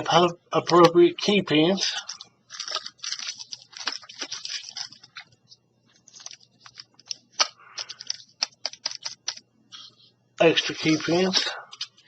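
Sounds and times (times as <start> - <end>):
crinkly rustle: 1.9 - 7.2, 10.7 - 12.0.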